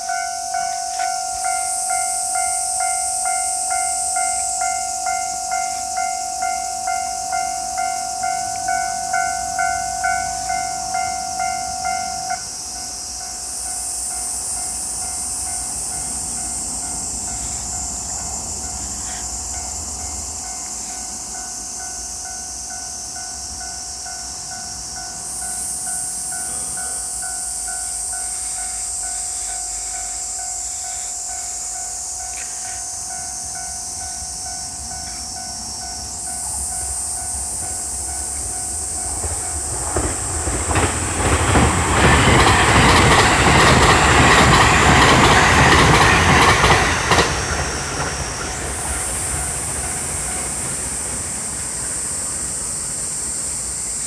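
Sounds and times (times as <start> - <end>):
steady ringing tone: 0.0 - 40.9
level crossing warning bell: 0.0 - 52.5
low train rumble: 0.0 - 54.0.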